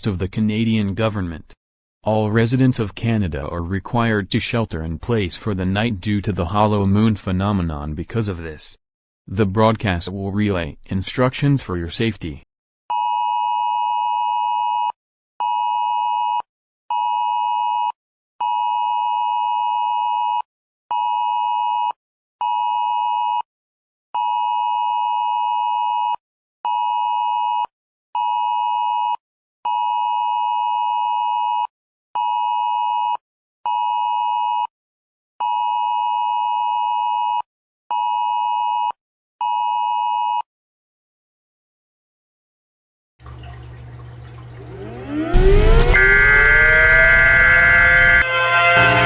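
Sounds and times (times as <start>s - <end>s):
electronic emergency alert beeping: 44.4s - 49.0s.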